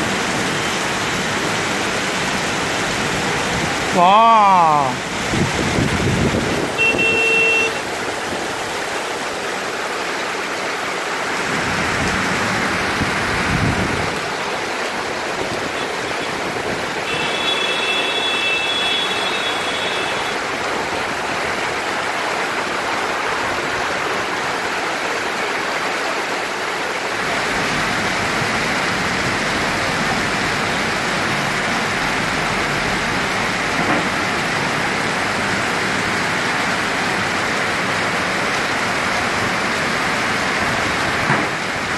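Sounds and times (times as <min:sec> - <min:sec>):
heavy rain pouring: 0:00.0 - 0:41.9.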